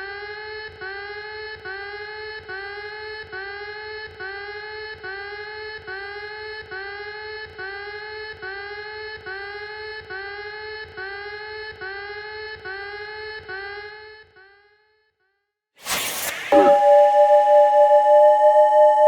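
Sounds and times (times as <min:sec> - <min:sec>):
buzzy electronic alarm tone: 0:15.8 - 0:19.0.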